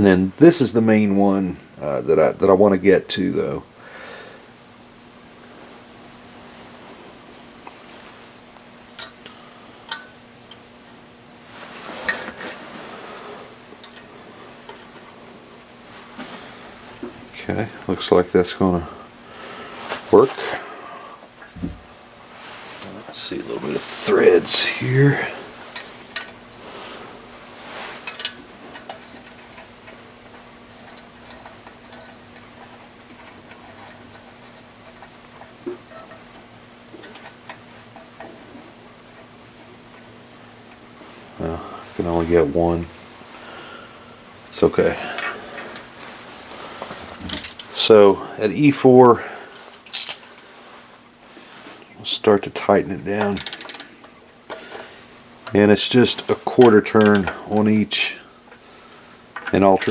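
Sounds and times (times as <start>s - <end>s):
scraping and handling of parts: 6.3s - 18.8s, 19.5s - 59.9s
small metal parts clinking: 49.9s - 50.2s, 53.2s - 53.9s.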